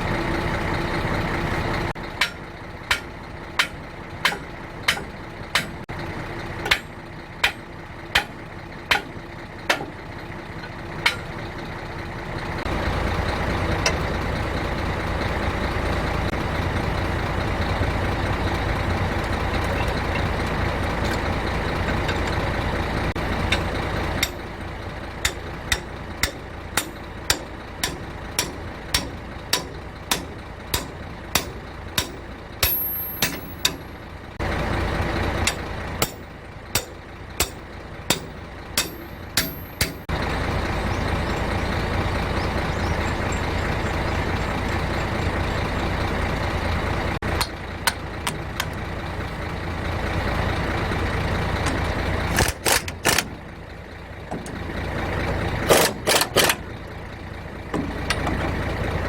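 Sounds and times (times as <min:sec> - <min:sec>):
loud mechanical noise: 0:00.0 - 0:59.0
sharp strikes: 0:25.2 - 0:33.9.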